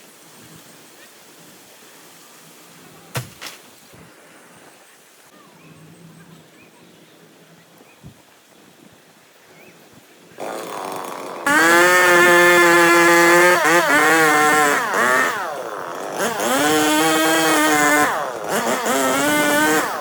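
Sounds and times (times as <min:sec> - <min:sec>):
chainsaw revving: 0:10.4 - 0:20.0.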